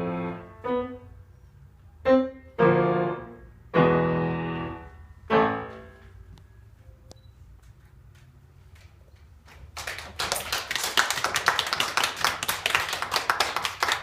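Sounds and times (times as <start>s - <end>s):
people applauding: 9.5s - 14.0s.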